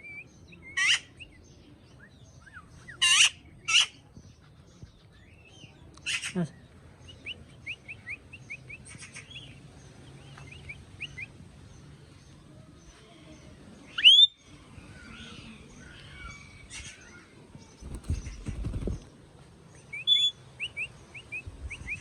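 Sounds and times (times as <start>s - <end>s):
birds chirping: 0.0s - 22.0s
bird whistled call: 14.0s - 14.4s, 19.9s - 22.0s.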